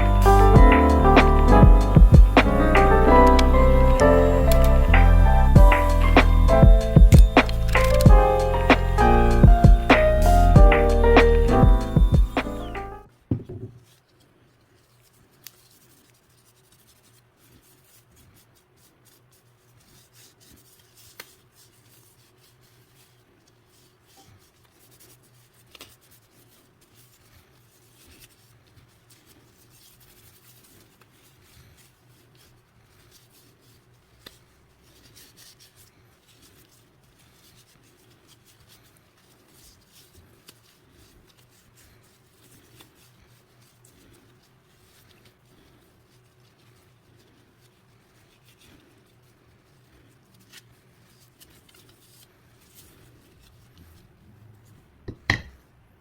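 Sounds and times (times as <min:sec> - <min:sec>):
low steady hum: 0:00.0 - 0:13.7
faint rubbing and handling: 0:12.4 - 0:55.8.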